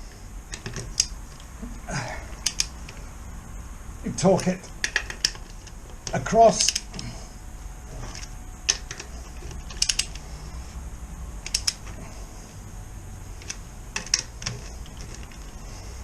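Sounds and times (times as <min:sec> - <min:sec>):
torque wrench clicks: 0:02.4 - 0:02.8, 0:09.6 - 0:10.2, 0:11.4 - 0:11.8.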